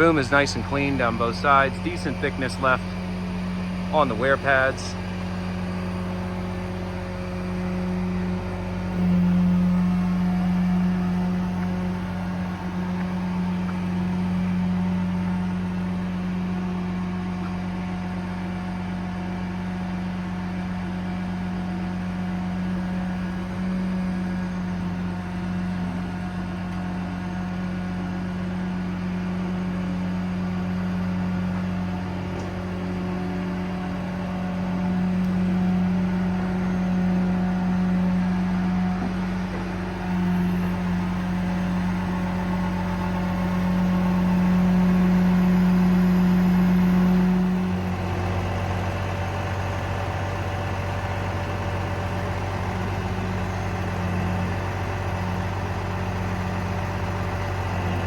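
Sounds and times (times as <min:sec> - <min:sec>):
crane hydraulics hum: 0:00.0 - 0:58.0
diesel engine running: 0:00.0 - 0:58.0.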